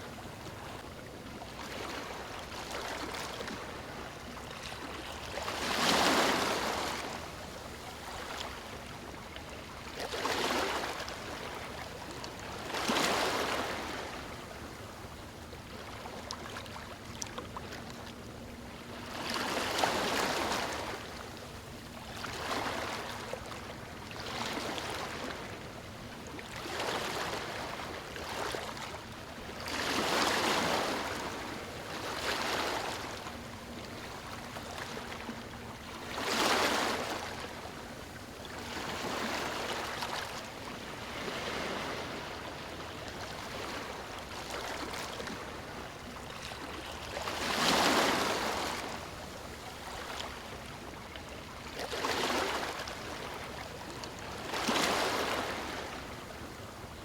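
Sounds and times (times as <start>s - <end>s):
waves breaking on stony shore: 5.4s - 7.1s, 29.7s - 33.1s, 36.0s - 37.5s, 41.0s - 42.4s, 46.6s - 49.0s, 51.8s - 53.4s, 54.4s - 56.0s.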